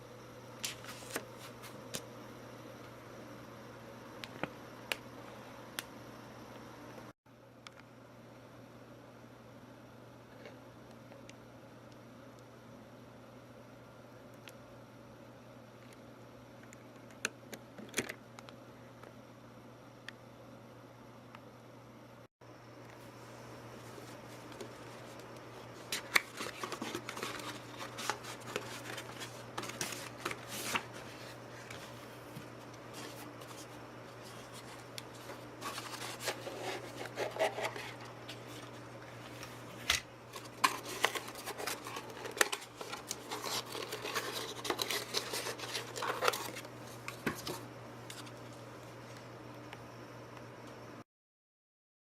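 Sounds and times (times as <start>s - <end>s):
steady low hum: 0.0s - 51.0s
plastic and metal parts scraping: 32.9s - 48.3s.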